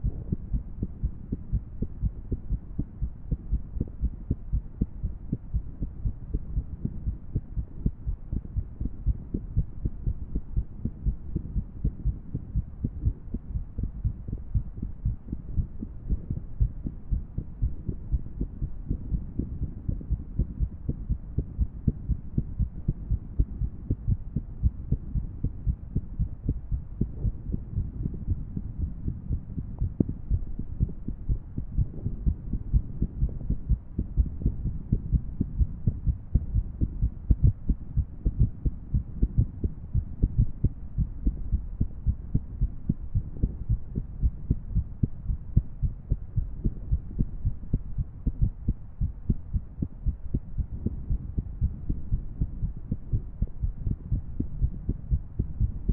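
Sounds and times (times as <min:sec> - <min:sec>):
irregular heartbeat thuds: 0:00.0 - 0:55.9
steady low rumble: 0:00.0 - 0:55.9.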